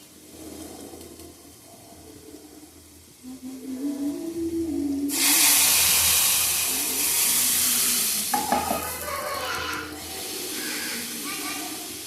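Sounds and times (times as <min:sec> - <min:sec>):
food sizzling in a pan: 0:05.0 - 0:12.0.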